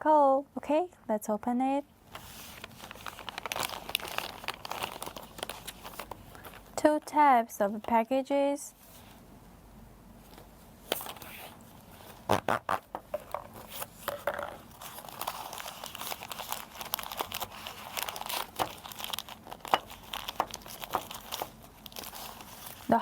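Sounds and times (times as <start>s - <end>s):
plastic bags crinkling: 2.1s - 6.8s, 10.9s - 23.0s.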